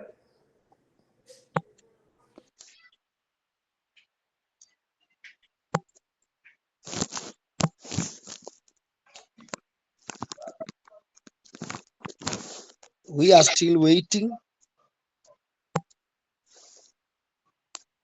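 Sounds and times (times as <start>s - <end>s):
crackling rustling and scraping: 6.4s - 13.1s.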